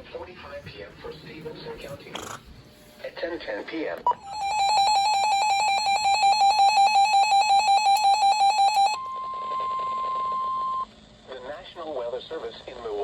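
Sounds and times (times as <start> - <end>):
rapid pulsing alarm beep: 4.1 - 10.9
steady warning alarm tone: 4.1 - 10.9.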